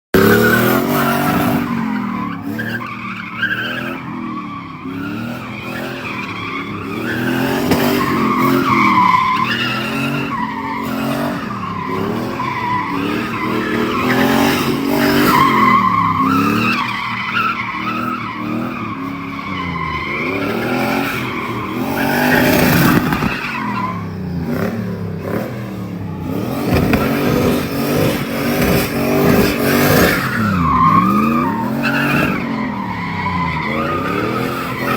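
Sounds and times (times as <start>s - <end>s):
car engine revving: 0.1s - 34.9s
tires squealing: 0.2s - 34.9s.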